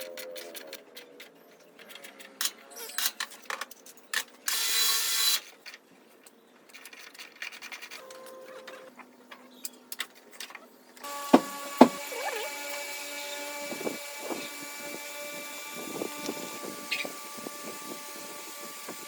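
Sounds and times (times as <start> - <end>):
sharp knocks: 11.2 - 12.1.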